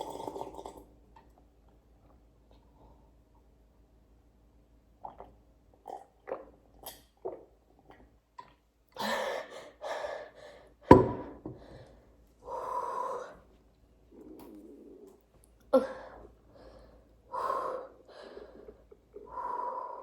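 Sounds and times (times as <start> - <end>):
breaths and gasps: 11.5 - 13.5.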